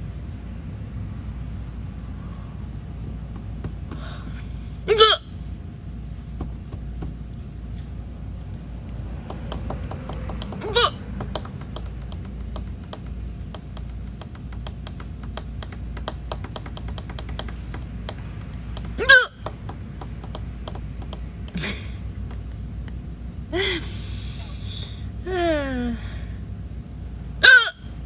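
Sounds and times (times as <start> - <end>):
low hum: 0.0 - 28.0
woman hiccupping: 4.9 - 5.2, 10.4 - 12.3, 18.8 - 19.5.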